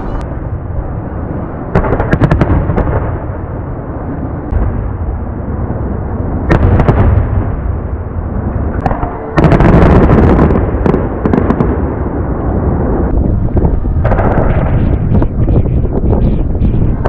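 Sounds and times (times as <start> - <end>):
low rumble of booms: 0.0 - 17.0
fireworks bursting: 1.7 - 3.6, 4.5 - 13.1
fireworks crackling: 1.7 - 15.3.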